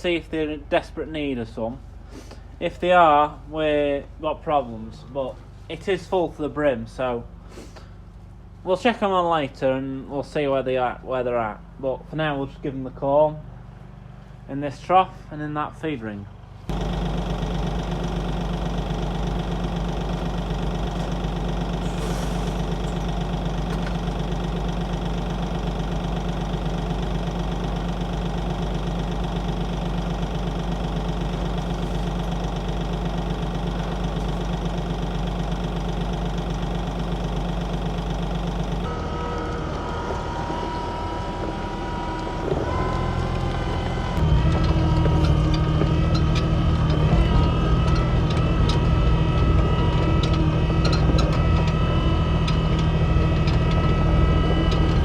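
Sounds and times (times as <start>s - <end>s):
diesel engine running: 0.0s - 55.0s
machine whine: 16.7s - 55.0s.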